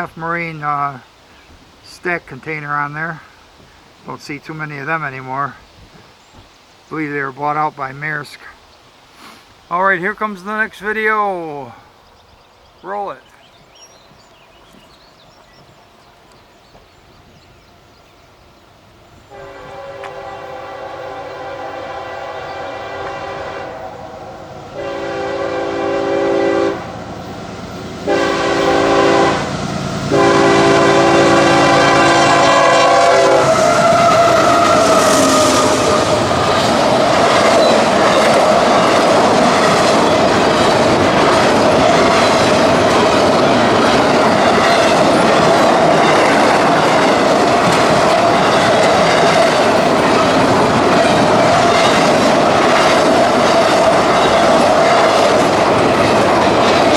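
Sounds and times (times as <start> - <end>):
train passing with rolling wheels: 9.7 - 56.9
locomotive air horn blasts: 19.3 - 27.0, 28.0 - 36.3.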